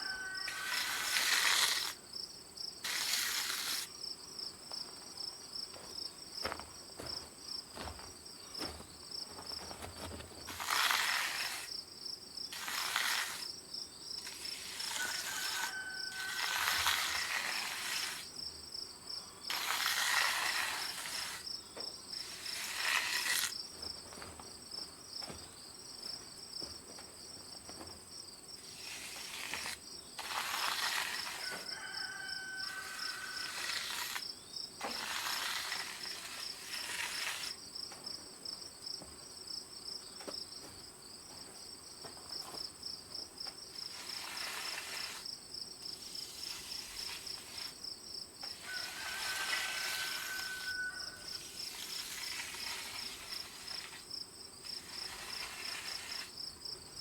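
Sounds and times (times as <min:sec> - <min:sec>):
rough noisy rasps: 0:00.0 - 0:02.0, 0:02.8 - 0:03.9, 0:05.7 - 0:11.7, 0:12.5 - 0:13.5, 0:14.2 - 0:18.4, 0:19.5 - 0:21.5, 0:22.2 - 0:24.4, 0:28.6 - 0:37.6, 0:43.7 - 0:45.3, 0:46.0 - 0:47.8, 0:48.4 - 0:56.4
insects trilling: 0:00.0 - 0:57.0.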